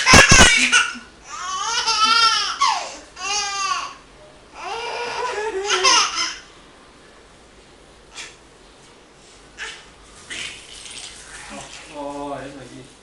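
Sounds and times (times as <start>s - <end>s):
young child laughing: 0.0s - 1.1s, 5.0s - 6.4s.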